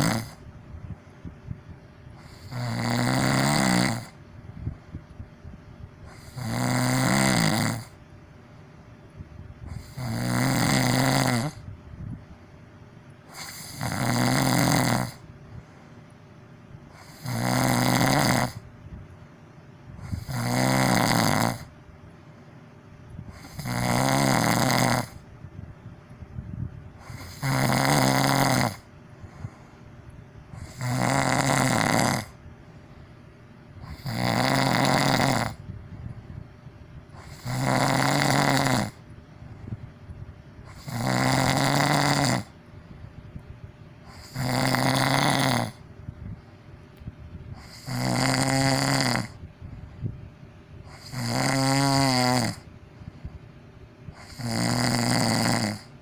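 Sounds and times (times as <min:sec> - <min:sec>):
person snoring loudly: 0:00.0 - 0:00.4, 0:02.2 - 0:04.2, 0:06.1 - 0:08.0, 0:09.7 - 0:11.7, 0:13.3 - 0:15.3, 0:16.9 - 0:18.6, 0:20.0 - 0:21.7, 0:23.3 - 0:25.2, 0:27.0 - 0:29.6, 0:30.6 - 0:32.4, 0:33.8 - 0:35.7, 0:37.1 - 0:39.0, 0:40.6 - 0:42.6, 0:44.0 - 0:45.9, 0:47.5 - 0:49.4, 0:50.9 - 0:52.7, 0:54.1 - 0:56.0.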